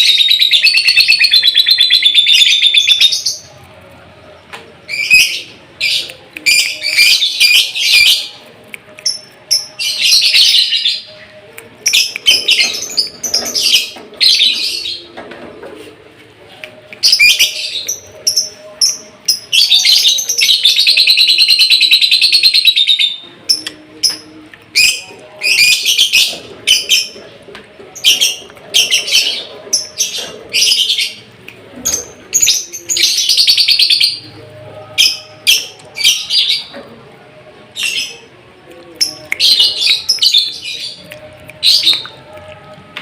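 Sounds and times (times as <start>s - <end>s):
lovebird chirping and trilling: 0.0s - 3.4s.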